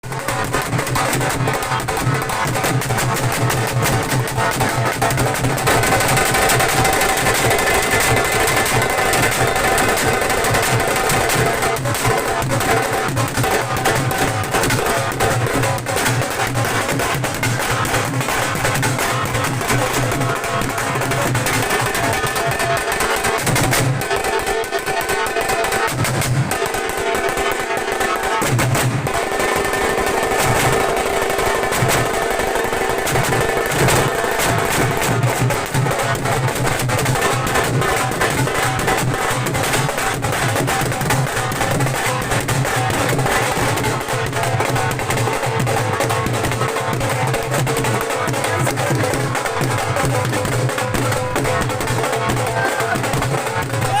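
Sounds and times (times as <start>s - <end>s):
deep booming drum beats: 0.0s - 54.0s
rapid dhol drumming: 0.0s - 54.0s.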